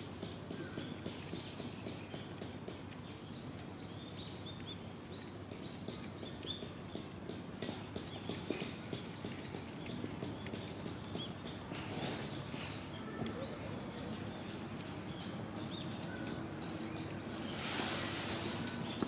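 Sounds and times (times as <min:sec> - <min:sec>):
wood fire crackling and popping: 0:00.0 - 0:19.0
rush of flame: 0:17.3 - 0:19.0.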